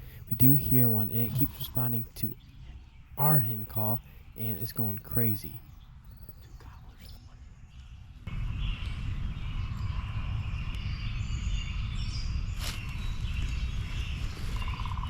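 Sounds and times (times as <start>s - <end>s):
faint bird chirping: 0.0s - 15.0s.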